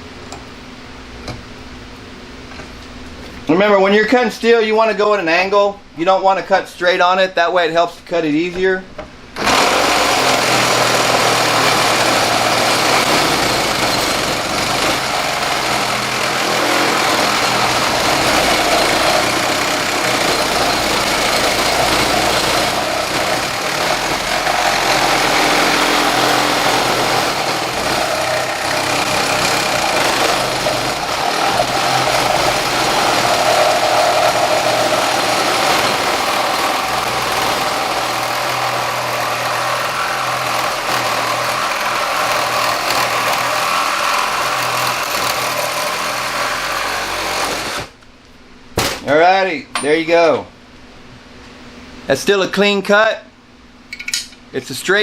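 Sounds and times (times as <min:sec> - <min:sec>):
reciprocating saw cutting steel: 0:09.4 - 0:47.9.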